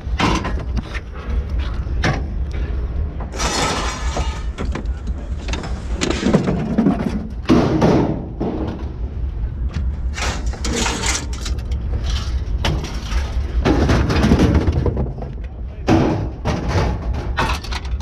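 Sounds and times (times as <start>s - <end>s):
low engine rumble: 0.0s - 18.0s
scrap metal clanking: 3.2s - 4.9s, 10.1s - 15.2s.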